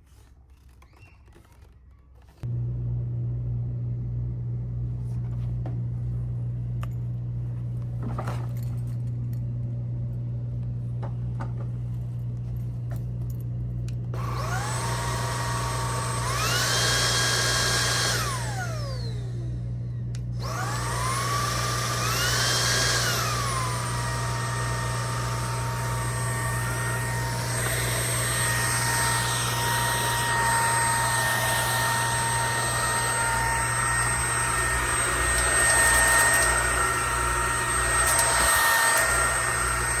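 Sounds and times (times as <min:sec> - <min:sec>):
vacuum motor whining: 0:14.2 - 0:40.0.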